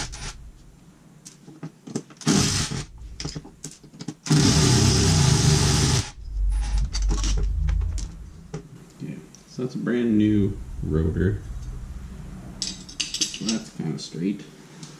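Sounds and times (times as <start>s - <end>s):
low rumble: 0.0s - 0.8s, 2.8s - 3.6s, 6.0s - 9.0s, 9.9s - 13.2s.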